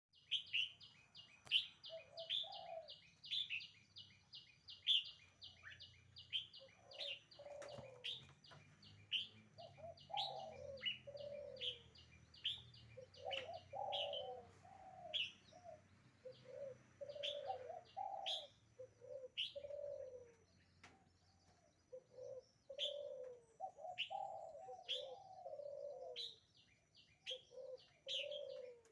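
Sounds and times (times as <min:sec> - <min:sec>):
lower-pitched bird call: 0:00.2 - 0:03.8, 0:09.1 - 0:20.5, 0:21.9 - 0:26.5, 0:27.2 - 0:28.9.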